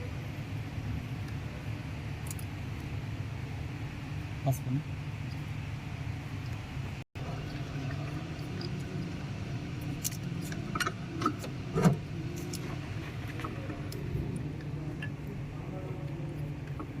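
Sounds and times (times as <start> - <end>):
truck engine humming: 0.0 - 17.0.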